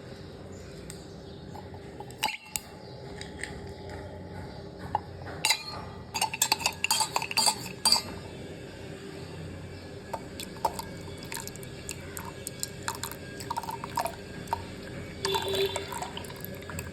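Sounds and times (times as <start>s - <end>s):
faint steady hum: 0.0s - 16.9s
metal spoon clinking against mug: 1.6s - 3.5s, 5.4s - 8.2s, 10.2s - 16.9s.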